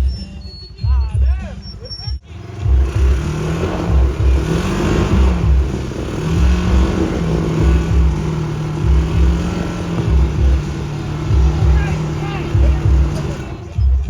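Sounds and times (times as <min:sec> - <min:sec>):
deep regular thumping: 0:00.8 - 0:01.6, 0:02.2 - 0:14.0
utility vehicle engine revving: 0:01.4 - 0:14.0.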